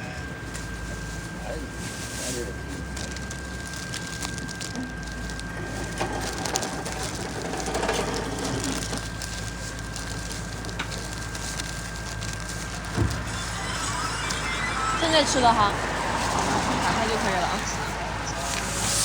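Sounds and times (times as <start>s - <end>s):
crackling and rustling handling: 0.0s - 19.0s
steady low hum: 0.0s - 19.0s
thin high whine: 12.6s - 19.0s.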